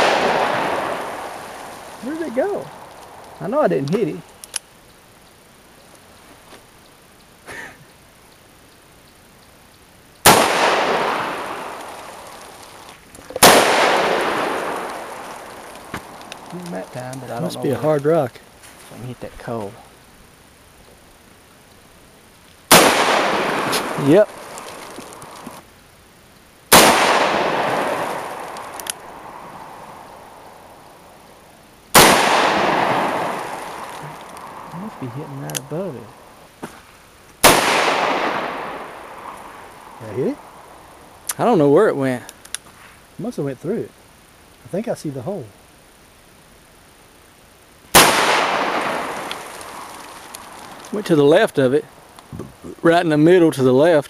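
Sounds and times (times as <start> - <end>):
gunshots with long echo: 0.0 - 3.3, 10.2 - 12.4, 13.4 - 16.4, 22.7 - 25.4, 26.7 - 30.5, 31.9 - 35.9, 37.4 - 41.0, 47.9 - 50.9.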